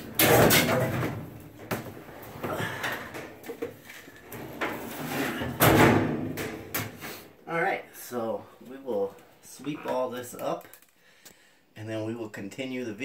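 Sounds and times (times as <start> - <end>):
washing machine scraping on floor: 4.3 - 5.7.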